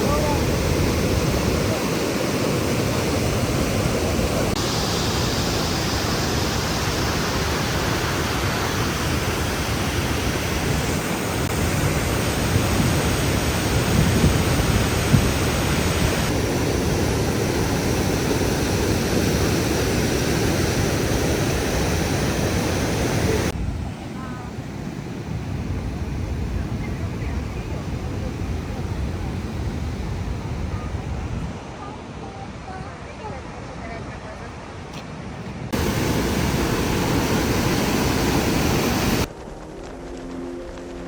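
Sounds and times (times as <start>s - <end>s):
waterfall rushing: 0.0s - 25.4s, 35.7s - 39.6s.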